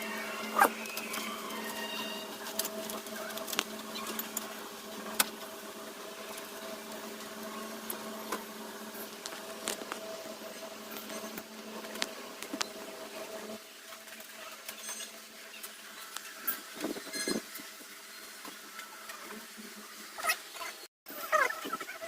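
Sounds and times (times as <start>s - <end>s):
steady machine hum: 0.0s - 20.2s.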